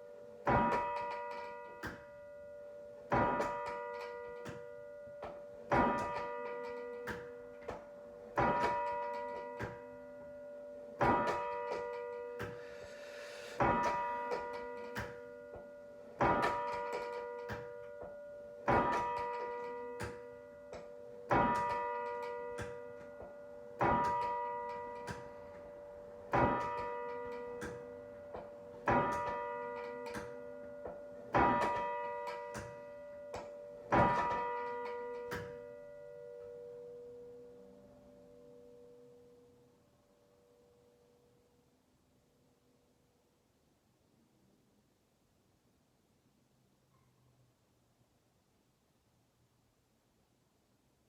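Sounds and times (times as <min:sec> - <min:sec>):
church bell tolling: 0:00.0 - 0:39.7.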